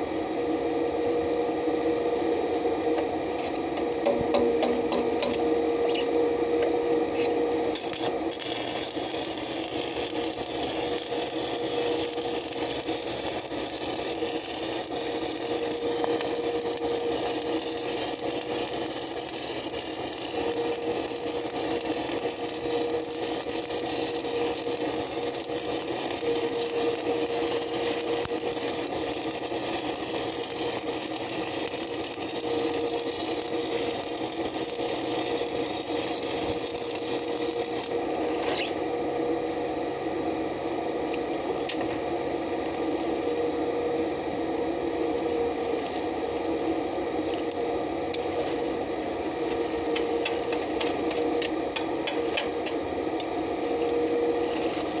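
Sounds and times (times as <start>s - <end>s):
steady hum: 0.0s - 55.0s
welding arc crackling: 7.6s - 38.1s.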